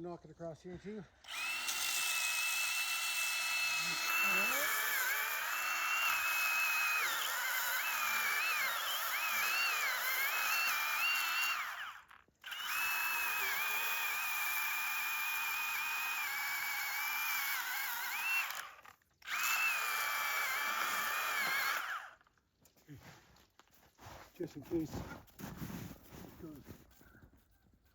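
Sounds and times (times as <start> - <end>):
pruning chainsaw cutting wood: 1.2 - 22.3.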